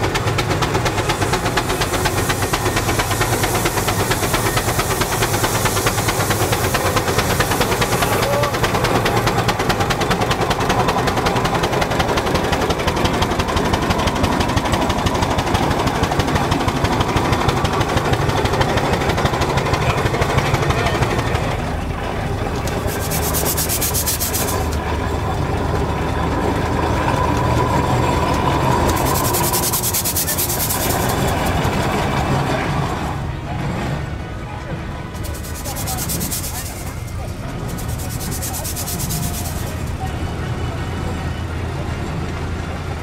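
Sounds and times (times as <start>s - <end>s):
steam hissing: 0.0s - 12.6s, 22.7s - 24.8s, 27.1s - 32.3s, 35.1s - 40.1s
steam engine clattering: 0.0s - 33.2s, 33.8s - 42.5s.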